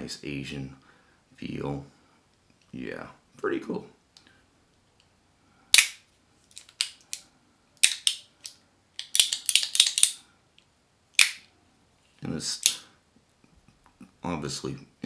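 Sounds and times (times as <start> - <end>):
metal fidget slider clicking: 7.8 - 8.2, 9.0 - 10.2.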